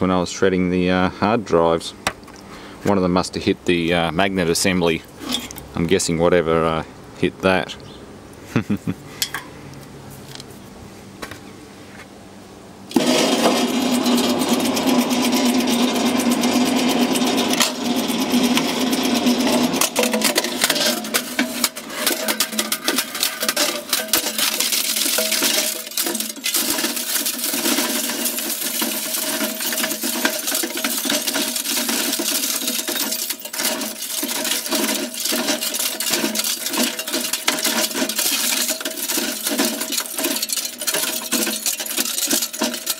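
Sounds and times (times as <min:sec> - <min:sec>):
shredder crunching metal and plastic: 0:12.9 - 0:42.9.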